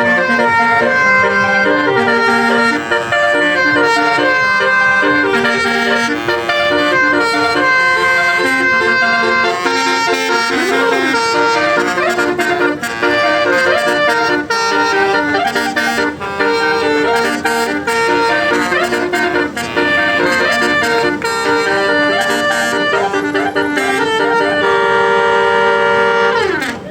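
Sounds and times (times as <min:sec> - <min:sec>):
musical bus horn melody: 0:00.0 - 0:26.9.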